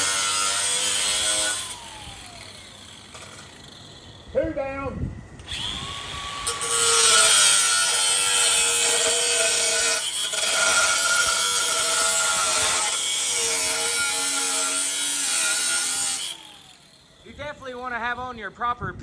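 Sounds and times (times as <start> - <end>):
angle grinder cutting steel: 0.0 - 4.3, 5.4 - 17.8.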